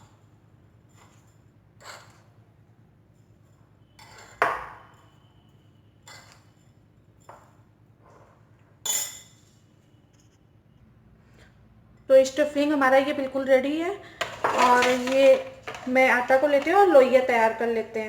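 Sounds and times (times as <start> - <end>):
spoon knocking and scraping bowl: 14.2 - 17.2.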